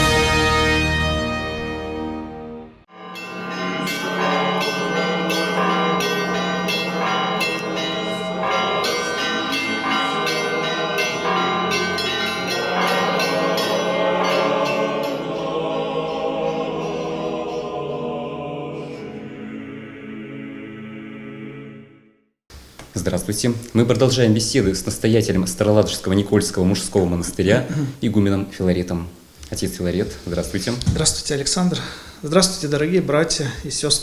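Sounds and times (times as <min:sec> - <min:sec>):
church bells pealing: 0:02.9 - 0:18.0.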